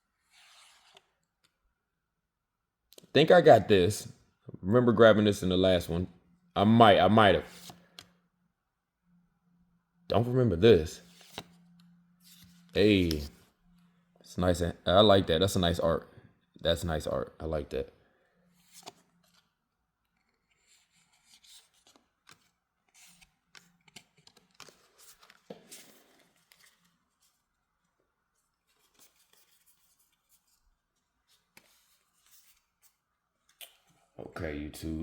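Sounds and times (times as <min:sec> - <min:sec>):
trading cards rustling and clicking: 0:12.2 - 0:13.4, 0:20.1 - 0:27.5, 0:28.6 - 0:30.6.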